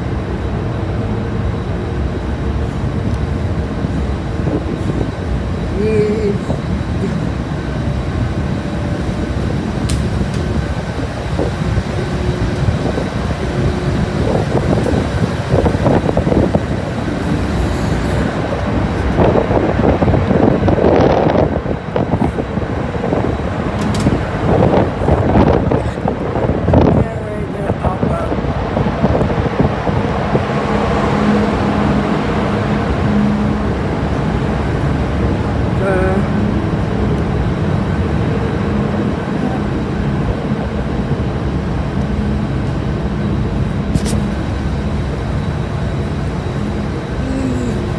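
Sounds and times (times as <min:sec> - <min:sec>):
ferry engine rumble: 0:00.0 - 0:47.9
sharp click: 0:44.0 - 0:44.4.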